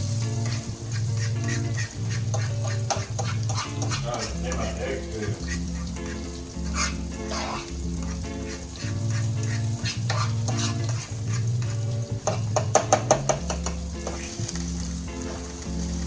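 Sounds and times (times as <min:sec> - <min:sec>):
food sizzling in a pan: 0:00.0 - 0:16.0
utensil scraping a pan: 0:00.0 - 0:16.0
sharp clicking taps: 0:11.6 - 0:14.2.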